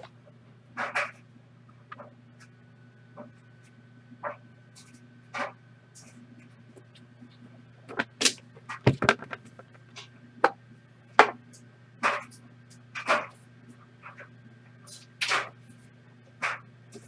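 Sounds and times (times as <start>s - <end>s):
low electrical hum: 0.0s - 17.0s.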